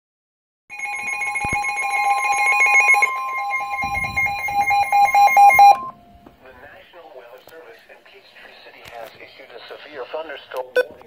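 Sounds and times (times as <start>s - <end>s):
shrill alarm tone: 0.7s - 6.0s.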